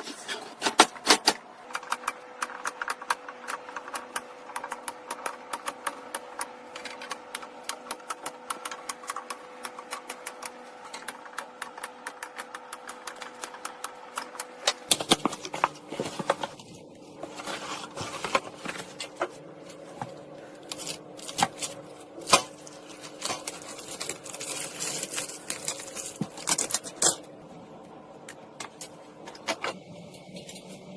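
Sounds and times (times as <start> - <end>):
faint steady hum: 0.0 - 30.9
fast clicking: 1.7 - 15.0.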